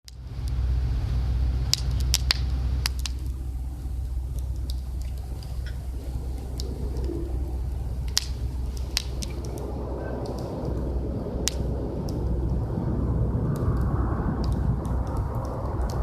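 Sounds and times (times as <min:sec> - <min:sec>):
steady low rumble: 0:00.0 - 0:16.0
campfire crackling and popping: 0:00.1 - 0:16.0.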